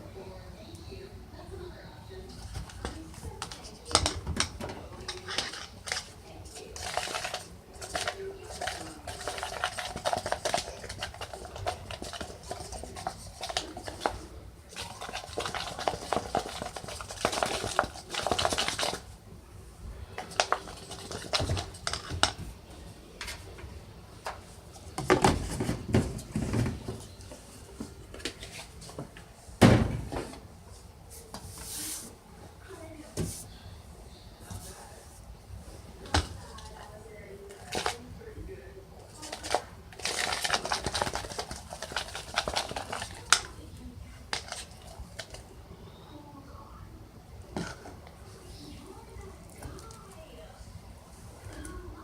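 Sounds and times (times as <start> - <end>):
utensil scraping a container: 5.0 - 19.1.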